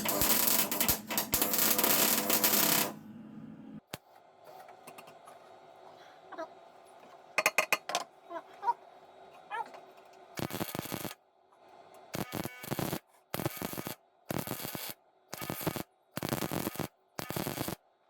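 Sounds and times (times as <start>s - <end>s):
sharp metallic clicks: 0.0s - 3.0s
welding arc crackling: 0.0s - 3.0s, 10.4s - 11.2s, 12.1s - 17.8s.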